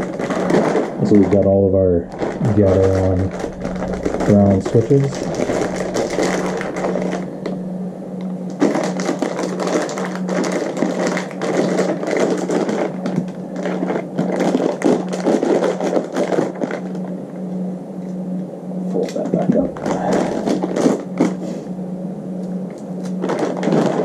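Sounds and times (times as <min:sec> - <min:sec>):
plastic package crinkling: 0:00.0 - 0:01.5, 0:02.1 - 0:07.6, 0:08.5 - 0:17.1, 0:22.7 - 0:24.0
low steady hum: 0:00.0 - 0:24.0.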